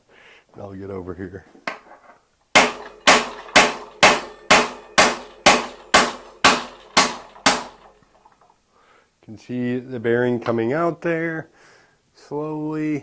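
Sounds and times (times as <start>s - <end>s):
hammer striking metal tool: 2.6s - 8.3s.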